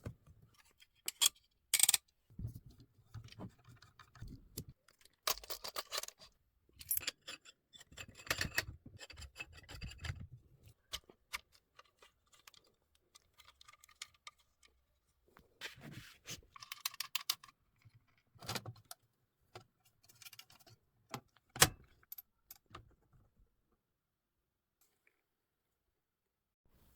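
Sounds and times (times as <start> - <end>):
metallic clicks and rattles: 1.1 - 2.0.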